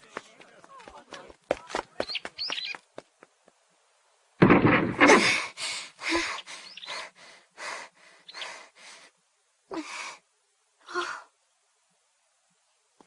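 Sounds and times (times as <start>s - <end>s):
heavy panting breaths: 5.2s - 9.1s.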